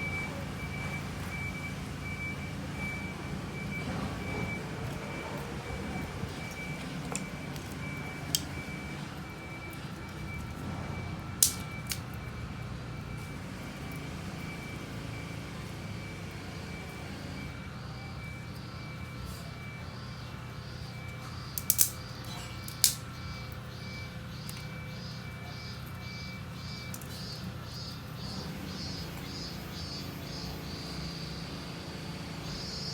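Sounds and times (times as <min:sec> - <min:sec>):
reversing beeper: 0:00.0 - 0:32.9
truck engine running: 0:00.0 - 0:32.9
sharp clicks: 0:11.4 - 0:12.1, 0:21.6 - 0:23.2.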